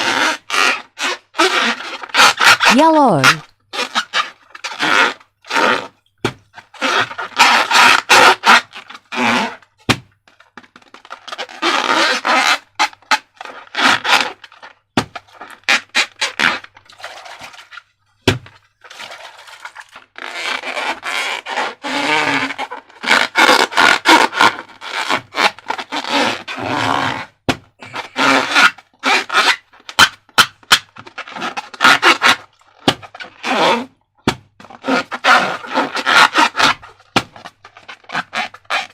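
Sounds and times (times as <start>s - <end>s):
slime squelching and scraping: 0.0s - 5.8s, 15.3s - 17.9s, 18.8s - 21.9s.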